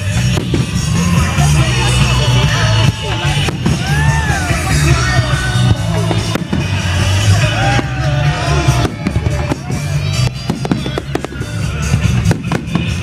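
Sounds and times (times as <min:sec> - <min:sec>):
firework bangs: 0:00.0 - 0:13.0
loud music with heavy bass: 0:00.0 - 0:13.0
voices singing or shouting: 0:00.0 - 0:13.0.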